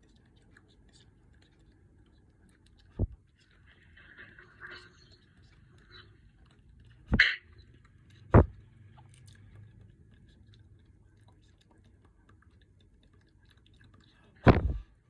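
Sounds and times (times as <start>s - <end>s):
loud thumps: 7.1s - 7.3s, 8.4s - 8.6s, 14.5s - 14.8s.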